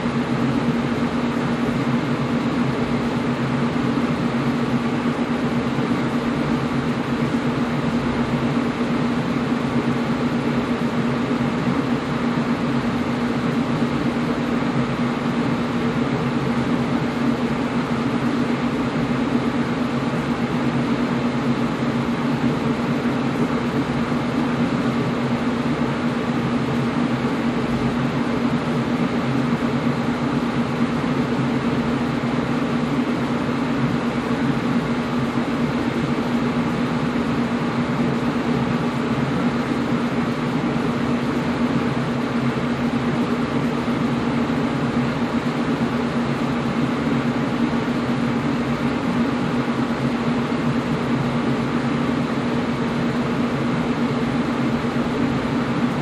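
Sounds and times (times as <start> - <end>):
air conditioner rushing air: 0.0 - 56.0.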